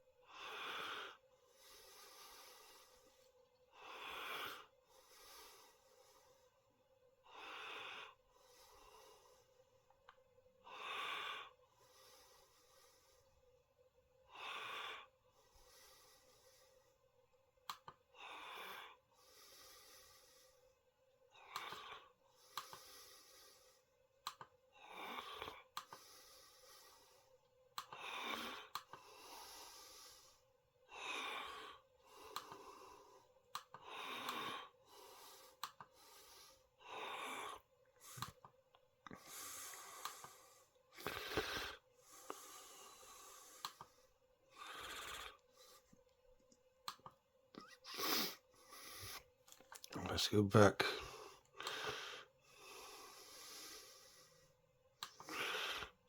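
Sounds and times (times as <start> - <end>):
person breathing softly: 0.2 - 9.9, 10.6 - 13.6, 14.3 - 17.2, 18.1 - 46.1, 47.6 - 49.3, 50.0 - 56.0.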